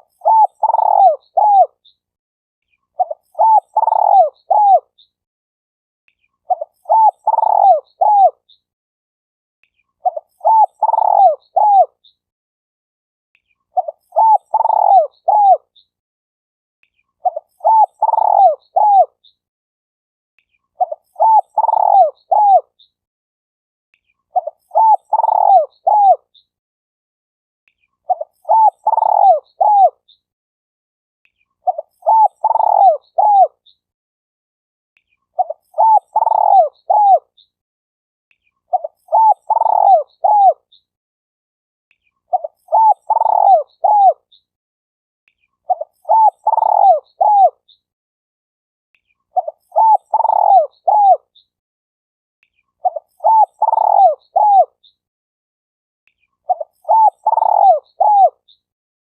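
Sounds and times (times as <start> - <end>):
dove cooing: 0.0 - 1.8, 3.0 - 4.9, 6.5 - 8.4, 10.0 - 12.0, 13.8 - 15.6, 17.2 - 19.1, 20.8 - 22.7, 24.4 - 26.2, 28.1 - 30.0, 31.7 - 33.5, 35.4 - 37.3, 38.7 - 40.6, 42.3 - 44.2, 45.7 - 47.6, 49.4 - 51.2, 52.8 - 54.7, 56.5 - 58.4.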